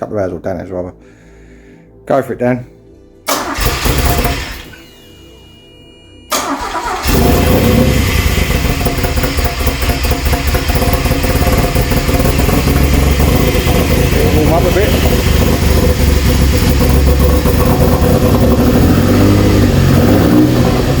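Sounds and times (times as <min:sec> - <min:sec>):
engine cranking: 0:03.3 - 0:04.8, 0:06.3 - 0:20.4
engine running at fast idle: 0:03.6 - 0:04.8, 0:06.4 - 0:21.0.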